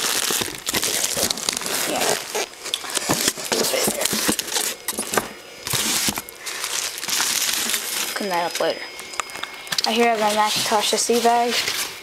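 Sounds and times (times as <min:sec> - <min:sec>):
rustling and crinkling: 0:00.0 - 0:12.0.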